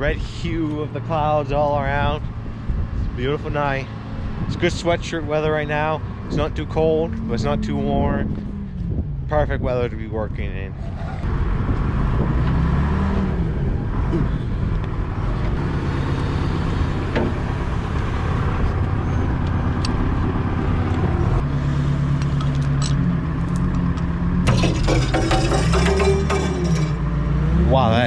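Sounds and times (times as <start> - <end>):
loader engine running: 13.6 - 28.0
chain clattering under load: 22.4 - 23.8, 24.5 - 27.0.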